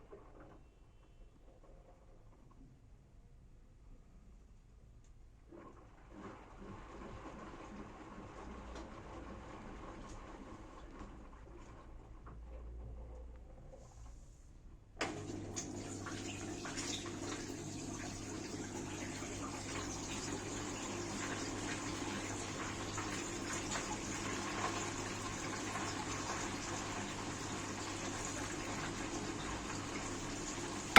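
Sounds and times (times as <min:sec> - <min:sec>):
water rushing into washing machine: 0:05.4 - 0:12.2, 0:15.0 - 0:30.9.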